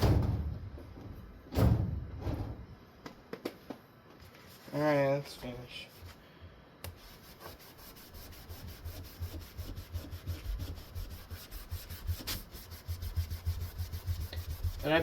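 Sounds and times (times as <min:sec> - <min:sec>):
wipe scrubbing fan blade: 0:07.0 - 0:15.0.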